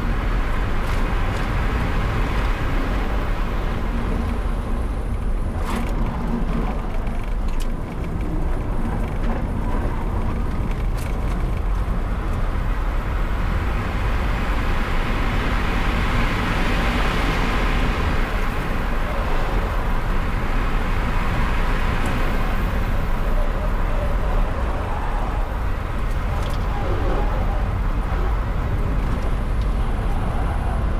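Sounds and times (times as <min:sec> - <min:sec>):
tyre and road noise: 0:00.0 - 0:30.9
wind noise: 0:00.0 - 0:30.9
low rumble: 0:17.5 - 0:30.9.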